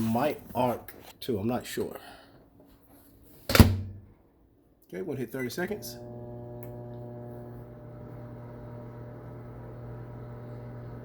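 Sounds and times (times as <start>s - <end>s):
microwave oven humming: 5.7s - 11.0s.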